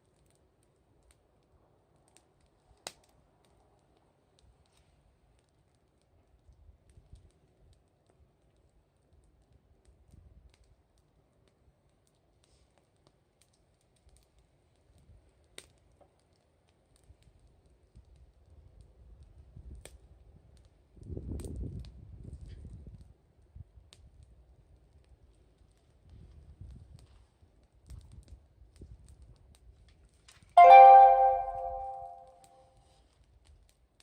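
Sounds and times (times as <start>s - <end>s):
campfire crackling: 0.0s - 21.9s.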